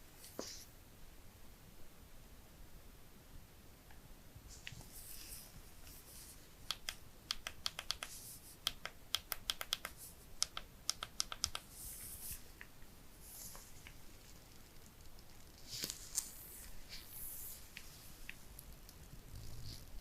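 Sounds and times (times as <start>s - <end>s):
soft rustling: 4.4s - 6.7s, 11.6s - 20.0s
typing clicks: 6.7s - 11.7s.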